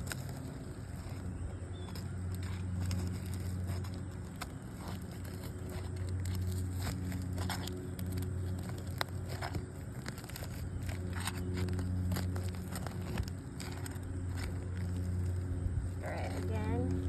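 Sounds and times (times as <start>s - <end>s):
shingles crackling and tearing: 0.0s - 17.0s
steady low hum: 0.0s - 17.0s.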